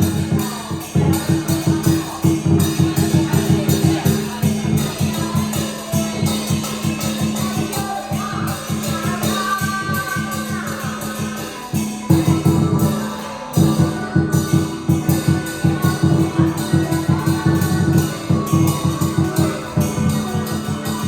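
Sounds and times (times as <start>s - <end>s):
fast percussion: 0.0s - 21.0s
melody line: 11.9s - 21.0s.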